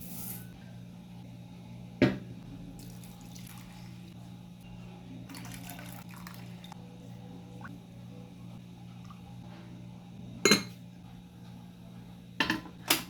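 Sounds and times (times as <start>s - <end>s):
liquid pouring and splashing: 5.3s - 6.8s.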